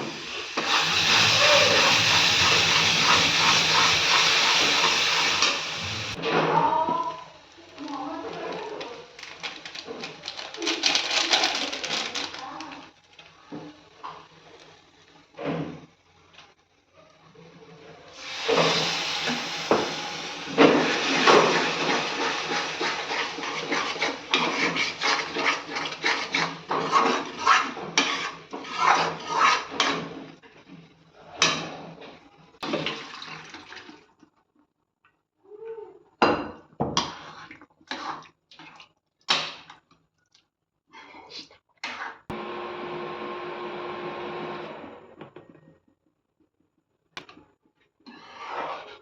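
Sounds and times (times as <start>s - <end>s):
pots and utensils clattering: 0.0s - 6.6s, 8.3s - 12.7s, 18.2s - 30.3s.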